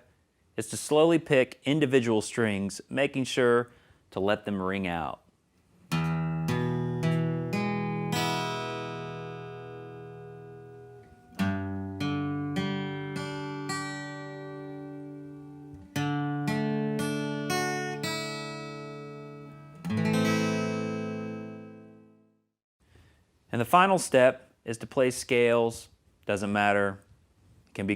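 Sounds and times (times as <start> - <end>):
acoustic guitar notes picked: 5.9 - 22.3.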